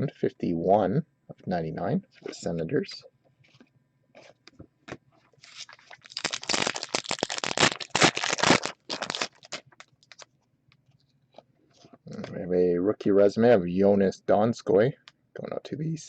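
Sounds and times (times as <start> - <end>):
packaging crinkling and tearing: 5.4 - 10.3.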